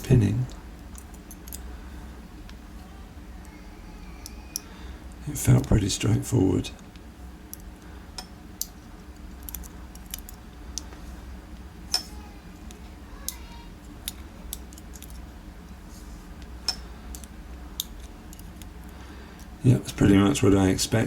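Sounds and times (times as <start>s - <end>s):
metallic clicks of small parts: 0.9s - 1.6s, 7.5s - 10.9s, 12.7s - 15.2s, 16.7s - 18.8s.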